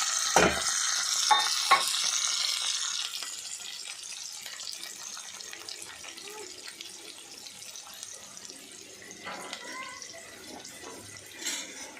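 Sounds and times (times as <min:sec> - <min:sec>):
onions sizzling in hot oil: 0:00.0 - 0:11.9.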